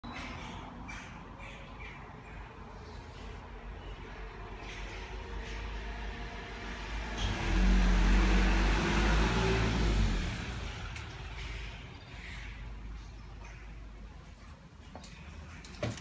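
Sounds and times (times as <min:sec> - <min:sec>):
vehicle engine passing by: 0:04.7 - 0:11.9.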